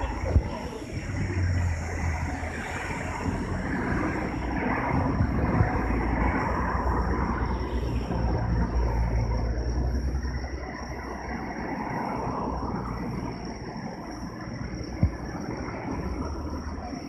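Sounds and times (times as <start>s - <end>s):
insects chirring: 0.0s - 17.0s.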